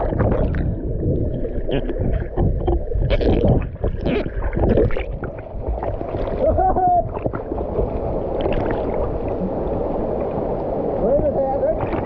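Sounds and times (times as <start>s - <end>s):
river water rushing: 5.5s - 12.0s.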